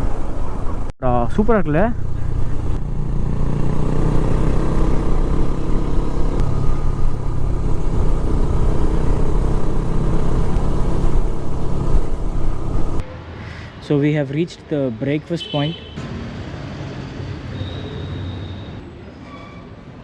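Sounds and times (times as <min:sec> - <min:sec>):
motorcycle engine cruising: 0:01.5 - 0:13.1
wind rumble on microphone: 0:06.3 - 0:13.0.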